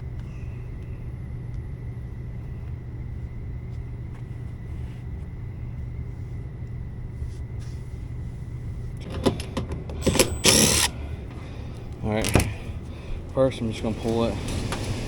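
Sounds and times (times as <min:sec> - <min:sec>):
faint high whine: 0:00.0 - 0:09.0, 0:10.0 - 0:14.4
heat pump low hum: 0:00.0 - 0:15.0.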